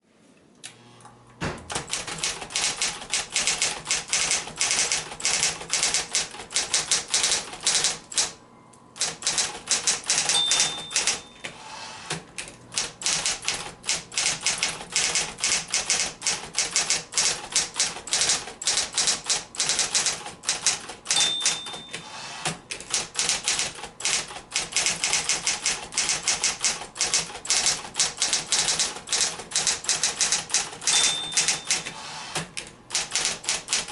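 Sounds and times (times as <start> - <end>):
electric typewriter keystrokes: 1.6 - 8.4, 9.0 - 33.9
typewriter bell ding: 9.8 - 11.5, 21.1 - 22.2, 30.8 - 32.0.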